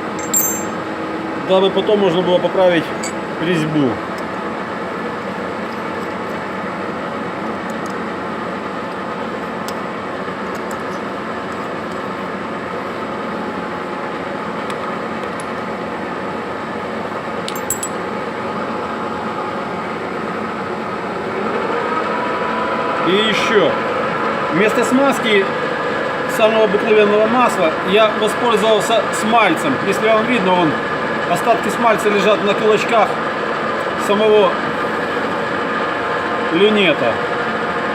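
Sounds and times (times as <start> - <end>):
light metallic clinks: 0.1 - 0.8, 17.5 - 18.0.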